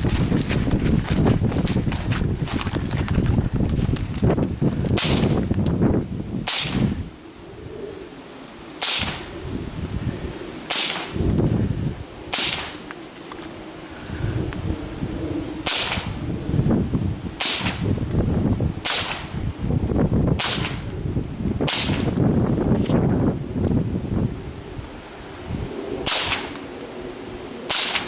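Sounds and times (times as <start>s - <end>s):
thumping movement noise: 0.0s - 7.0s
rifle shots: 6.5s - 6.9s, 8.8s - 9.3s, 10.7s - 11.2s, 12.3s - 12.8s, 15.6s - 16.1s, 17.4s - 17.8s, 18.8s - 19.3s, 20.4s - 20.8s, 26.1s - 26.6s, 27.7s - 28.0s.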